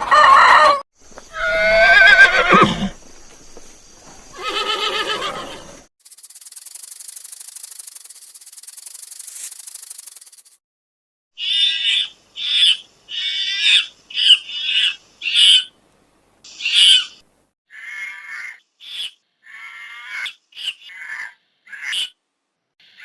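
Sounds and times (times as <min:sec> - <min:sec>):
harsh animal calls: 0:00.0 - 0:03.0, 0:04.3 - 0:05.8, 0:11.4 - 0:15.7, 0:16.5 - 0:22.2.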